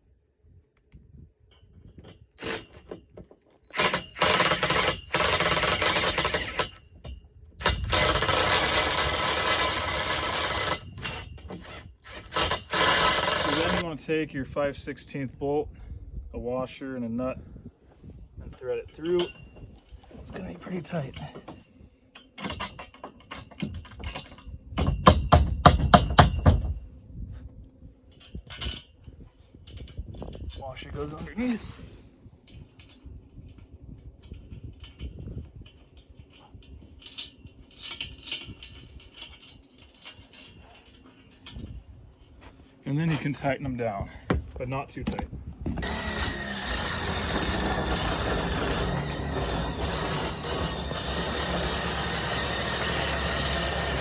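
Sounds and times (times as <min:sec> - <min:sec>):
power drill boring through metal pipe: 0:03.7 - 0:06.8, 0:07.6 - 0:13.8, 0:45.8 - 0:54.0.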